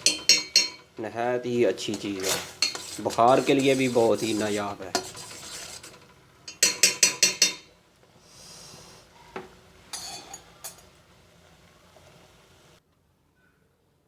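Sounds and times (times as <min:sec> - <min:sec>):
metal spoon clinking on pot: 0:00.0 - 0:01.0, 0:01.9 - 0:07.7, 0:09.9 - 0:10.9
short hiss: 0:08.2 - 0:09.3.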